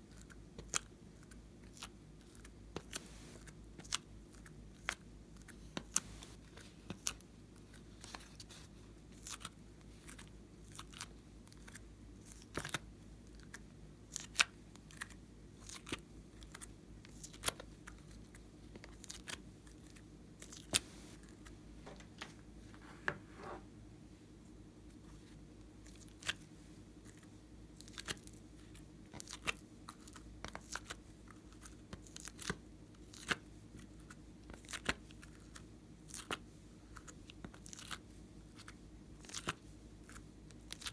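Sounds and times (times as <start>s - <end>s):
faint steady hum: 0.0s - 40.9s.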